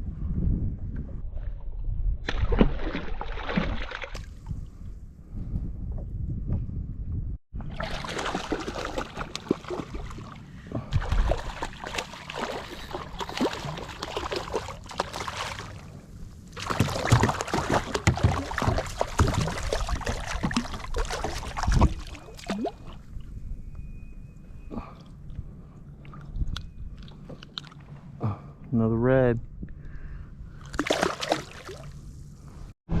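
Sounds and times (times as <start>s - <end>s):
water splashing against kayak: 7.6s - 15.9s, 16.6s - 23.0s.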